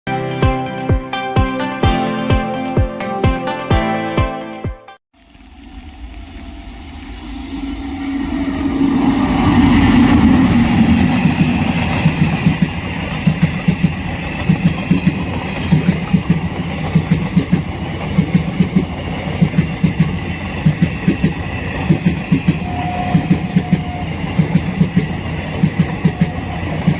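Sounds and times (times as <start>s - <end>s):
electric locomotive passing: 5.2s - 26.9s
train wheels clattering on rail joints: 10.7s - 26.9s.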